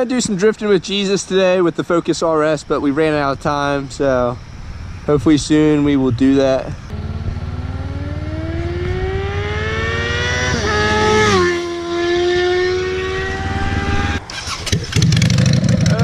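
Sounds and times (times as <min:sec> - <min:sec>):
low steady rumble: 0:02.4 - 0:09.9
vehicle engine accelerating: 0:03.7 - 0:16.0.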